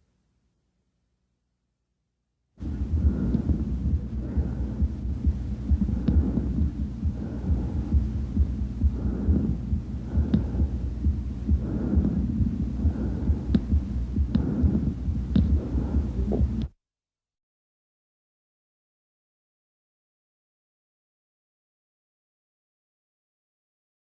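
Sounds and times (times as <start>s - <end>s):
breath sounds through stethoscope: 2.6s - 16.7s
steady low hum: 2.6s - 16.8s.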